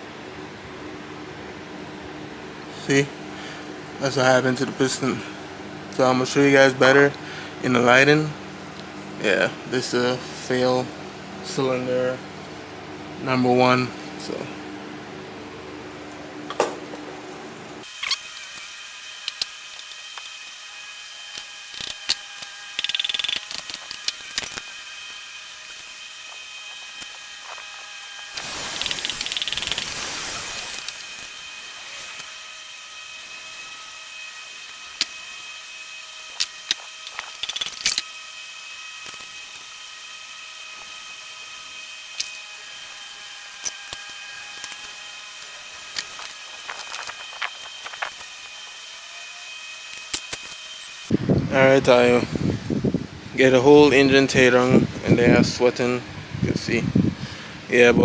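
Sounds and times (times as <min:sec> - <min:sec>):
ratchet clicks: 0:21.4 - 0:24.6, 0:28.4 - 0:31.3, 0:36.3 - 0:38.0
hissing noise: 0:28.4 - 0:31.4.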